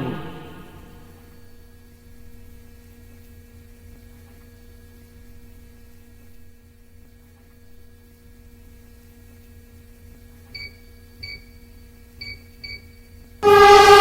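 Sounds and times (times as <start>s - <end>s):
steady tones: 0.0s - 1.2s
low hum: 0.0s - 1.4s.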